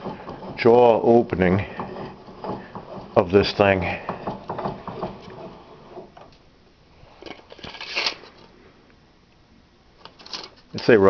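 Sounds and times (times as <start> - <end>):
scraping and rattling handling noise: 7.2 - 8.6, 10.0 - 10.9.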